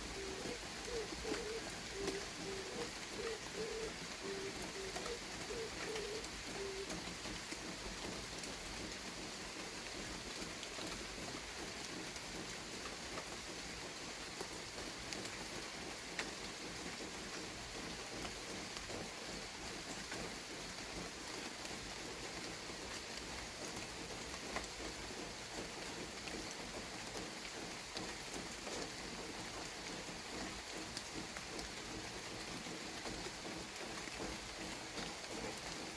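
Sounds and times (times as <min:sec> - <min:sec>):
steady rain falling: 0:00.0 - 0:35.9.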